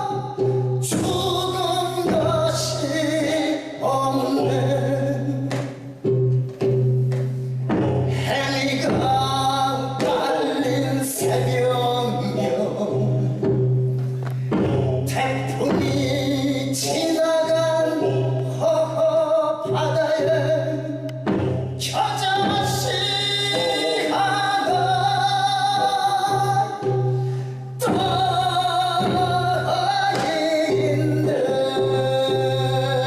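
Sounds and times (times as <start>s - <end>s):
person singing long held notes: 0.0s - 5.6s, 14.4s - 33.0s
instrumental accompaniment: 0.0s - 33.0s.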